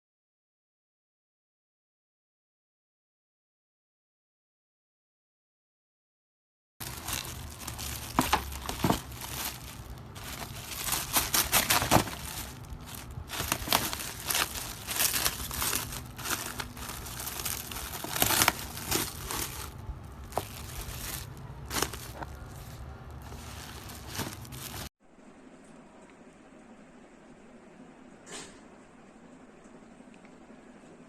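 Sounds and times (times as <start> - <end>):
packaging crinkling and rustling: 6.8 - 24.9.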